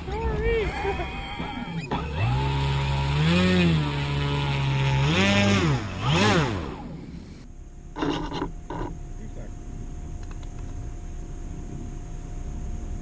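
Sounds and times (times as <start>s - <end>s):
model airplane motor and propeller: 0.0s - 9.5s.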